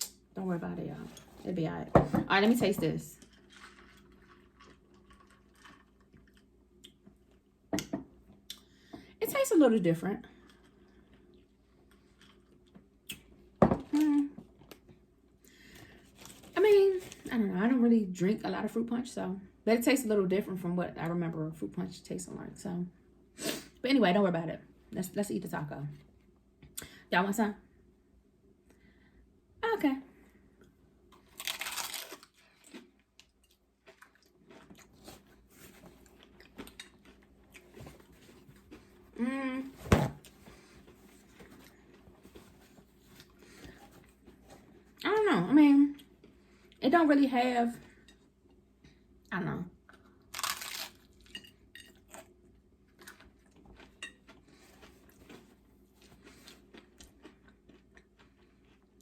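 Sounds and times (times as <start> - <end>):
close-up chewing: 3.2 - 7.4, 30.6 - 39.2, 49.9 - 59.0
taco crunching: 3.2 - 7.5, 31.1 - 39.1, 49.9 - 59.0.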